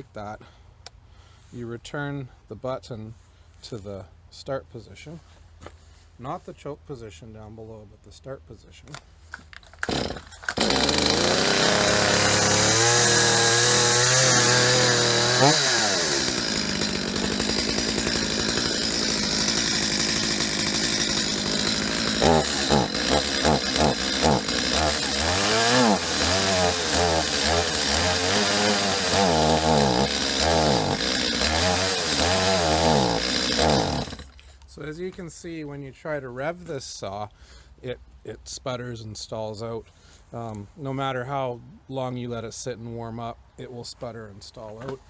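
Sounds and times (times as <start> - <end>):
chainsaw pull-start cord: 8.9 - 34.7
chainsaw engine sputtering: 9.6 - 34.6.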